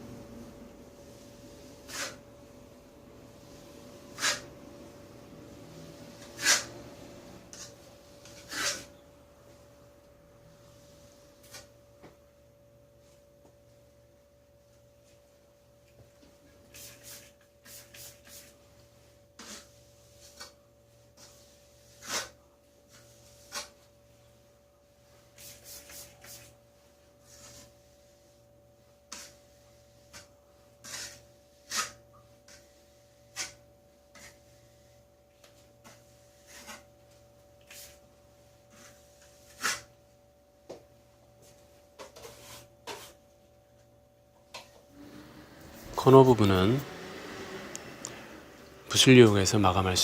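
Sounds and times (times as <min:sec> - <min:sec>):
trowel rubbing on wall: 0:01.1 - 0:02.3, 0:03.4 - 0:04.5, 0:06.1 - 0:09.0, 0:16.6 - 0:23.9, 0:25.2 - 0:26.5, 0:27.2 - 0:38.0, 0:38.7 - 0:40.0, 0:42.0 - 0:43.2, 0:45.6 - 0:47.4.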